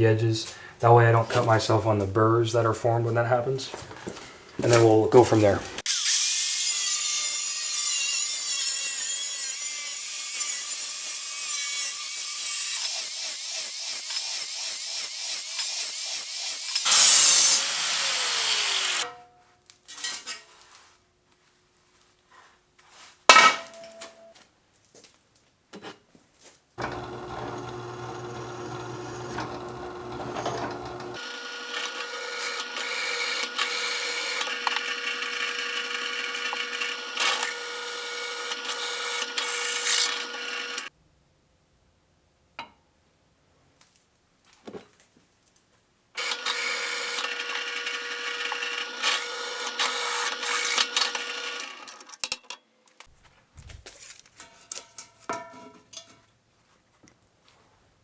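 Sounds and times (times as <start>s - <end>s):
angle grinder cutting steel: 5.8s - 19.2s, 26.8s - 40.9s, 46.2s - 52.1s.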